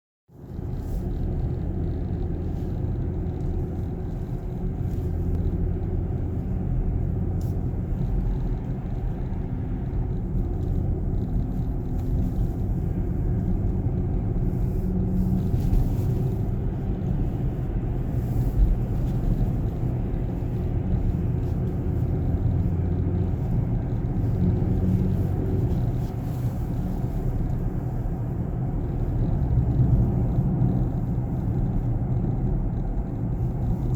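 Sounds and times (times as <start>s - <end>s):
car road and engine rumble: 0.3s - 33.9s.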